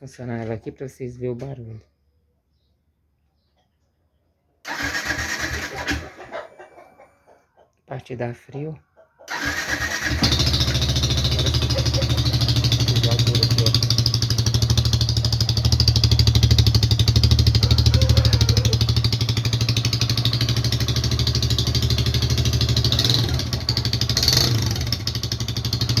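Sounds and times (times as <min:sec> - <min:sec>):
motorcycle engine idling: 0:09.3 - 0:26.0.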